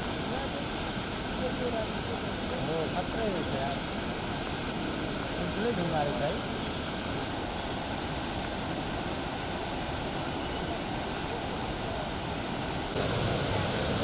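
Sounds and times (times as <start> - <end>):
floodwater rushing: 0.0 - 14.0.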